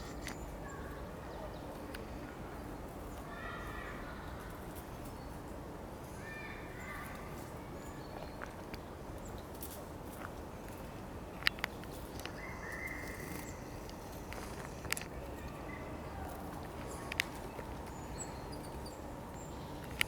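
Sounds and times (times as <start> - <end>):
faint bird chirps: 12.2 - 14.8.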